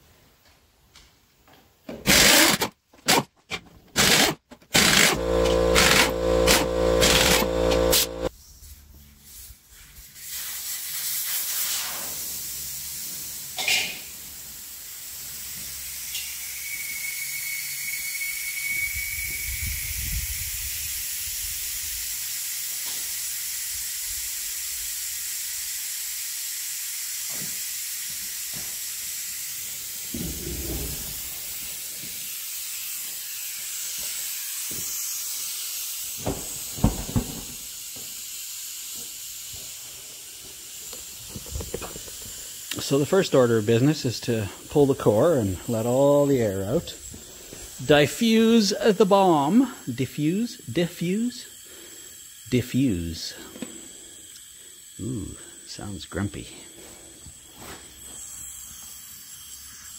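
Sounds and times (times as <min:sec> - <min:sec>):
air hissing out of tire valve: 0:07.8 - 0:56.0, 0:56.6 - 0:59.9
short whistle: 0:16.1 - 0:20.0.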